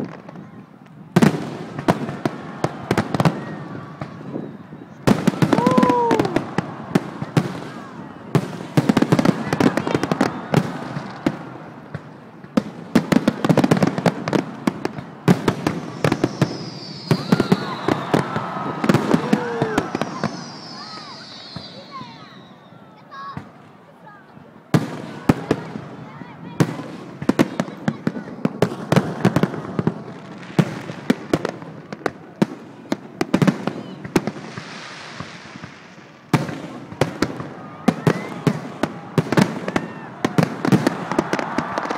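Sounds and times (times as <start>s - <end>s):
fireworks crackling: 0.0s - 41.9s
faint hiss: 15.5s - 23.0s, 34.3s - 37.6s.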